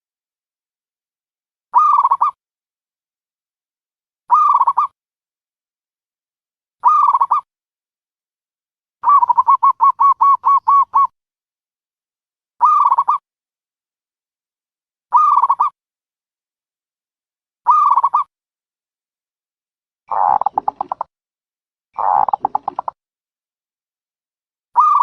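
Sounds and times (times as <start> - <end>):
dove cooing: 9.0 - 11.1, 20.1 - 21.0, 22.0 - 22.9.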